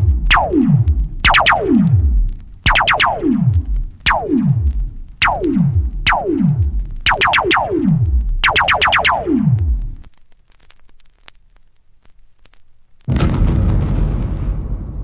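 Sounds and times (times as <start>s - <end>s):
synthesized laser zaps: 0.0s - 10.1s.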